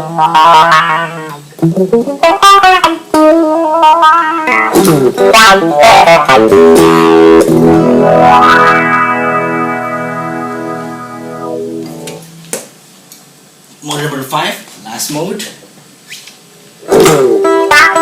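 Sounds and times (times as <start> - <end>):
electric guitar with wah pedal: 0.0 - 12.4, 16.8 - 18.0.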